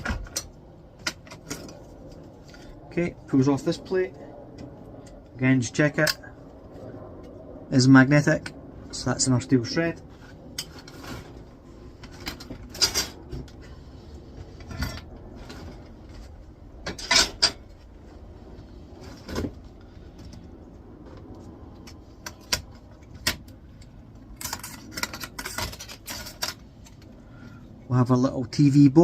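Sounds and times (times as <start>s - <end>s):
clicks and metal clatter: 10.1s - 13.8s, 14.5s - 17.8s, 21.1s - 27.2s.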